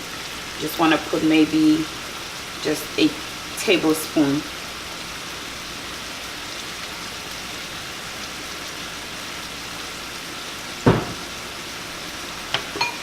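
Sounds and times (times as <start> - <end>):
shrimp sizzling in a skillet: 0.0 - 13.0
sharp knock: 10.9 - 11.2.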